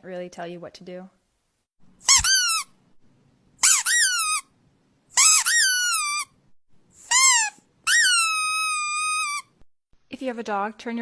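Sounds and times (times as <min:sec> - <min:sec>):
squeaky dog toy squeaking: 0:02.0 - 0:02.8, 0:03.6 - 0:04.5, 0:05.2 - 0:06.4, 0:07.0 - 0:09.6.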